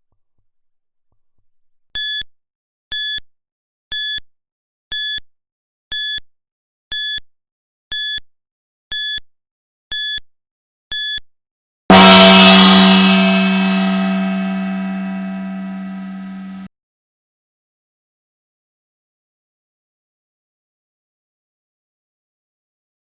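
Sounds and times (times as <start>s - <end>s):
gong ringing: 11.9s - 16.7s.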